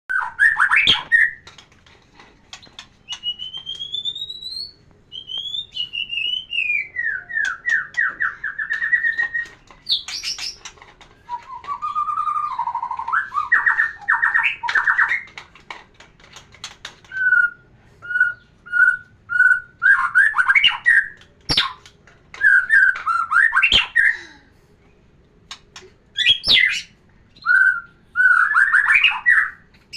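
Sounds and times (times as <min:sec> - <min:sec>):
songbird whistling and trilling: 0:00.1 - 0:01.4, 0:02.7 - 0:10.6, 0:11.3 - 0:15.3, 0:17.1 - 0:21.8, 0:22.4 - 0:24.2, 0:26.2 - 0:29.6.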